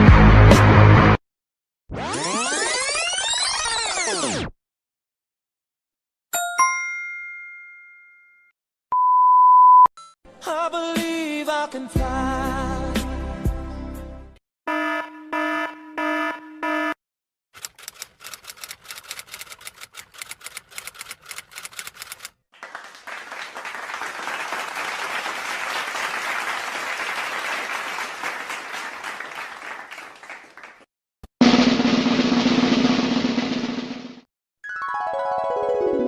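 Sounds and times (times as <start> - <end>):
fast irregular clicking: 17.6 - 22.4.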